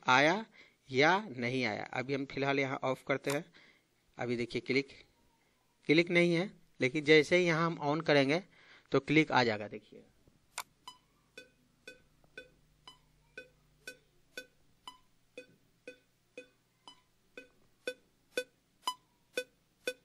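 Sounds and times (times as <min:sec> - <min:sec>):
metronome click: 0:10.8 - 0:20.0.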